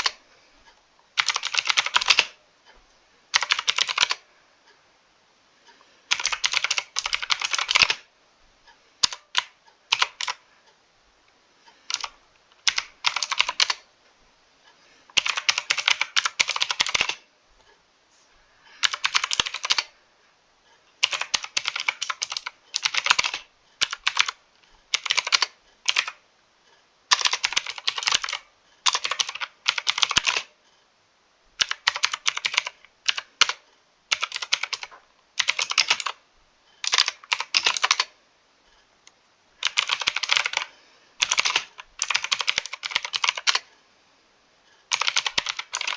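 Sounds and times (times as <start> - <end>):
mechanical keyboard typing: 1.2 - 2.4, 3.3 - 4.2, 6.1 - 8.1, 9.0 - 10.4, 11.8 - 13.9, 15.1 - 17.2, 18.8 - 19.9, 21.0 - 26.2, 27.1 - 30.5, 31.6 - 36.2, 36.8 - 38.2, 39.6 - 43.7, 44.9 - 45.9.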